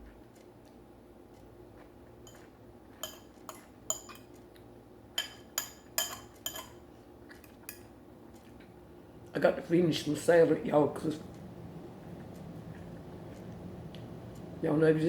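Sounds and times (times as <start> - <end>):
fork clinking against plate: 2.2 - 4.4, 5.2 - 8.5.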